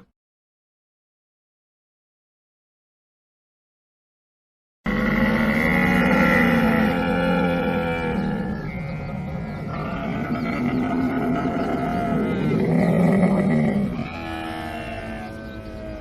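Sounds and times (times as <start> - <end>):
camel calling: 4.9 - 16.0.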